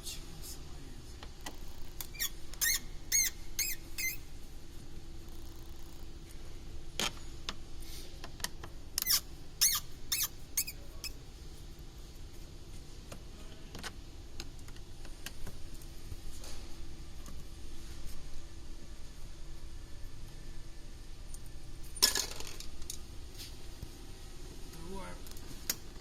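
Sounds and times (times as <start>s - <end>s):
plastic trim squeaking: 2.0s - 4.2s, 9.0s - 10.8s.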